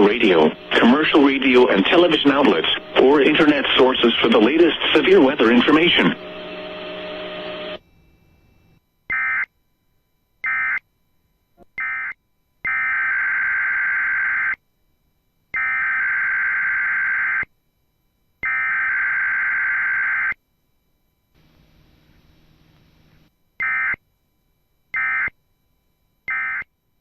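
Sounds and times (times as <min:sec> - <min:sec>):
raspy digital data bursts: 0:00.0 - 0:07.3.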